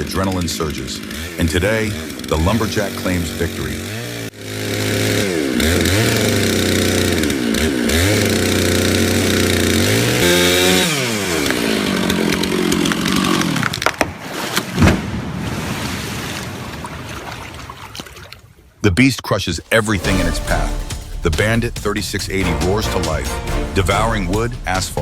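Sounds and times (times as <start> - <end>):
chainsaw engine revving: 0.0 - 13.9, 19.6 - 25.0.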